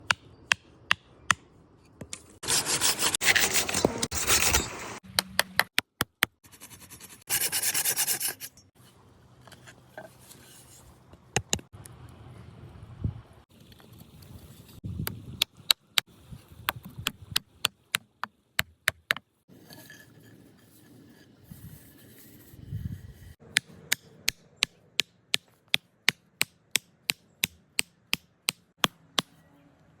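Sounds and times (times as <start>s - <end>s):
tool scraping across wood: 2.4s - 5.0s.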